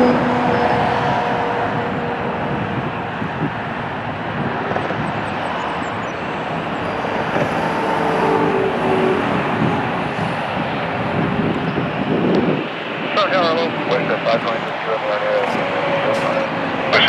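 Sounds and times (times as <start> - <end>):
faint engine whine: 0.0 - 17.0
jet engines rushing: 0.0 - 17.0.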